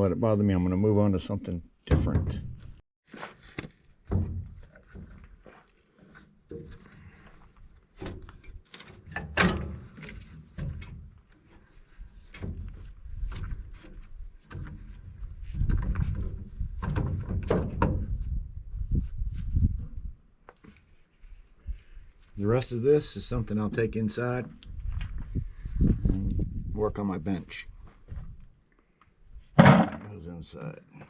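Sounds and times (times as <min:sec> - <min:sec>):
metal parts clunking and rattling: 0:08.0 - 0:11.0, 0:29.6 - 0:30.2.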